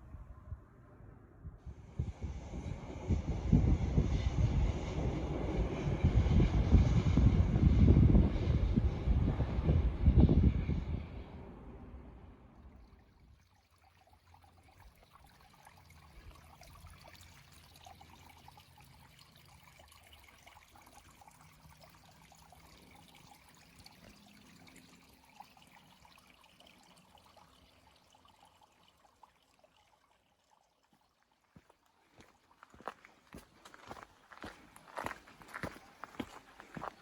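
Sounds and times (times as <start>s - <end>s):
low steady hum: 0.0s - 30.5s
faint trickling water: 12.5s - 37.0s.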